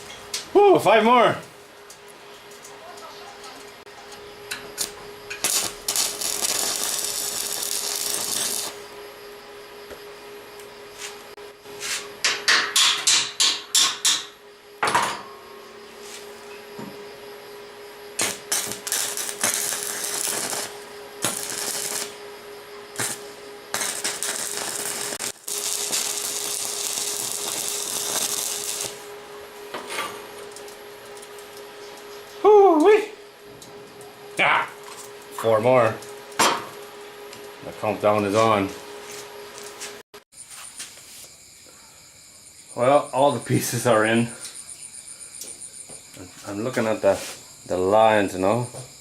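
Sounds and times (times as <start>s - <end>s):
faint steady hum: 0.0s - 12.7s, 13.4s - 39.7s
electric arc welding crackle: 4.2s - 8.9s, 18.2s - 29.2s, 34.8s - 38.7s
hammer strikes on metal: 12.2s - 15.3s.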